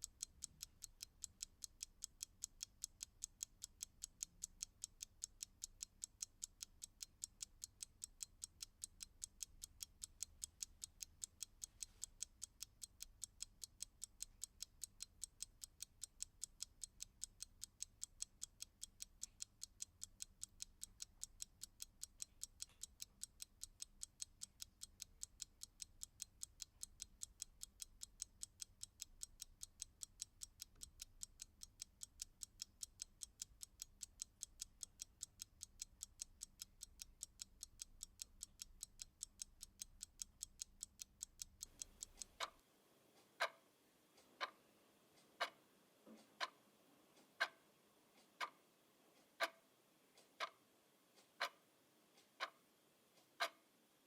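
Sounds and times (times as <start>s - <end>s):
clock ticking: 0.0s - 43.6s, 44.2s - 48.6s, 49.2s - 50.6s, 51.2s - 51.6s, 52.2s - 52.6s, 53.2s - 53.6s.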